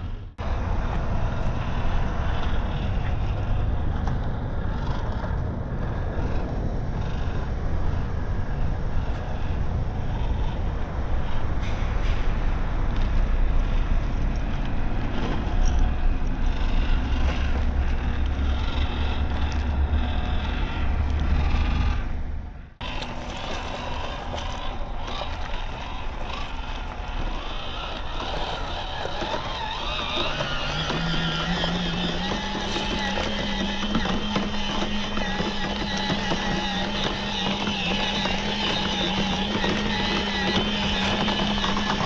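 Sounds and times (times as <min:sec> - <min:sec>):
toy car motor whining: 0:15.4 - 0:22.1, 0:22.8 - 0:42.0.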